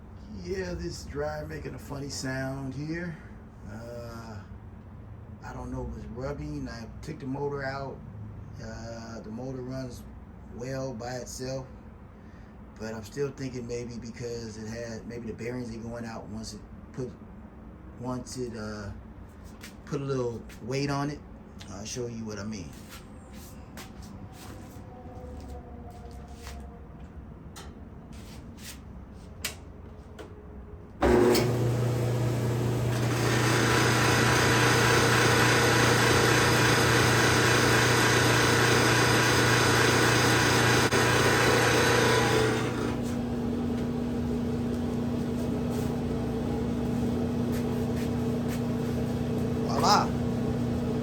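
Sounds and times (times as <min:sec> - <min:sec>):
clothes dryer running: 0:31.0 - 0:51.0
low motor hum: 0:31.0 - 0:51.0.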